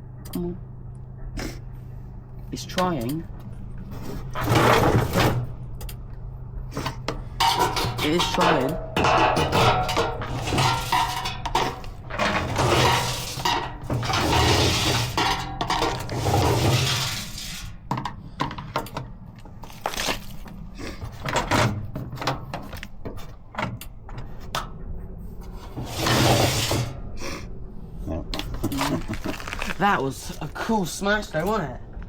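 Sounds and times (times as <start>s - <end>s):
washing machine running: 2.9s - 5.8s, 6.8s - 18.4s
hard objects clattering inside: 3.1s - 6.0s, 6.7s - 24.8s, 28.3s - 30.6s.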